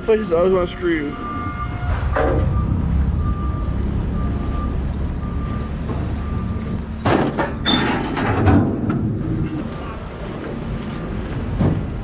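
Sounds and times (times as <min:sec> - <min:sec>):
diesel truck engine idling: 0:00.0 - 0:07.7
backup alarm beeping: 0:00.6 - 0:07.0
clatter: 0:07.0 - 0:09.6.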